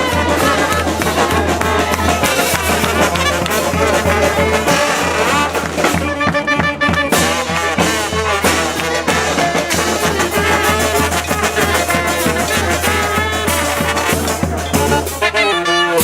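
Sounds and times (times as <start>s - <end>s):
steady percussive beat: 0.0s - 15.4s
brass band playing: 0.0s - 16.0s.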